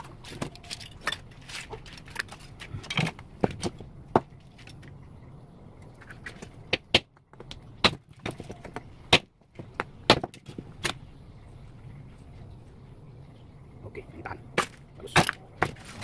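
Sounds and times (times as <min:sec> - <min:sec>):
small tools clicking and clinking: 0:00.0 - 0:03.7.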